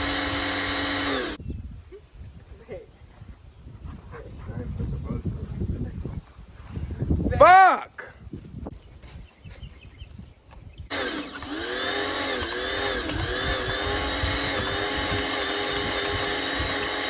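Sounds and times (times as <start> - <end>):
pressure washer motor running: 0.0 - 1.4, 10.9 - 17.0.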